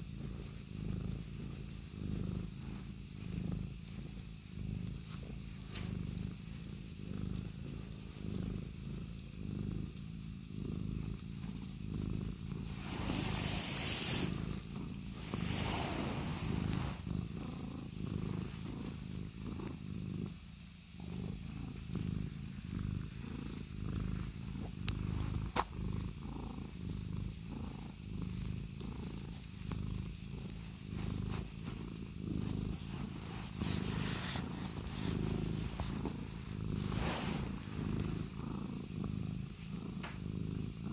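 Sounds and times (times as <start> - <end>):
cat purring: 0.0 - 40.9
hiss rushes: 11.7 - 19.5, 26.6 - 38.4.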